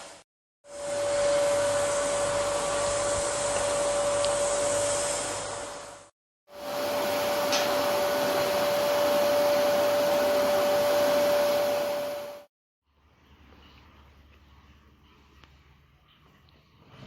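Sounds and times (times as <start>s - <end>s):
vacuum cleaner running: 0.7s - 12.5s.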